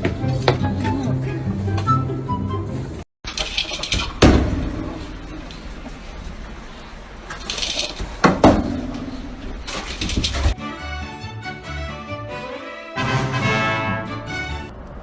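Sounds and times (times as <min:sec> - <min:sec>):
steady background noise: 0:00.0 - 0:10.6.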